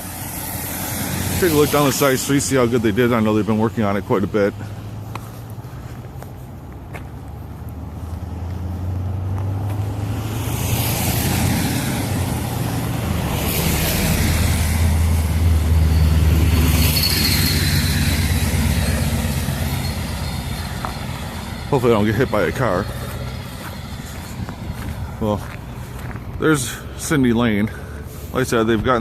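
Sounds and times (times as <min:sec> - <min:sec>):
low engine hum: 0:00.0 - 0:29.0
tyre hiss of passing vehicles: 0:00.0 - 0:29.0.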